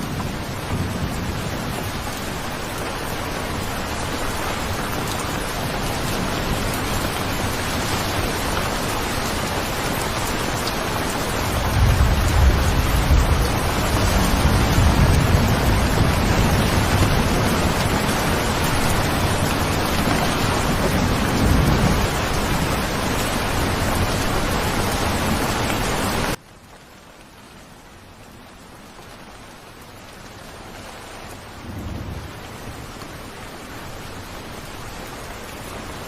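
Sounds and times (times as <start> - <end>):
low rumbling thunder: 0.0 - 2.3, 11.4 - 24.4, 31.6 - 32.9
heavy rain: 0.0 - 36.0
light rain: 0.0 - 36.0.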